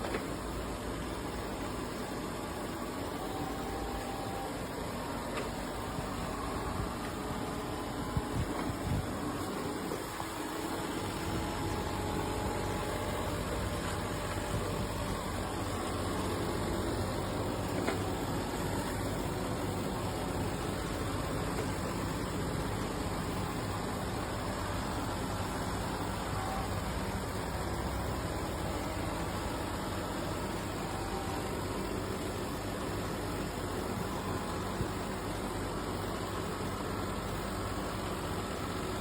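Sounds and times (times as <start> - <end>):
vacuum motor humming: 1.6 - 32.6.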